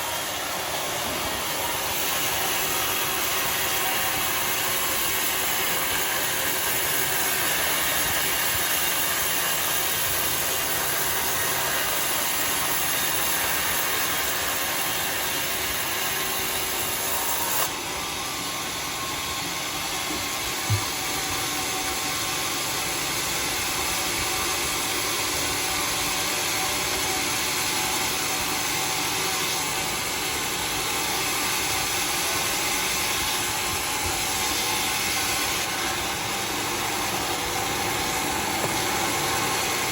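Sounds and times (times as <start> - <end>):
sawmill sawing a log: 0.0 - 39.9
short knock: 20.7 - 20.9.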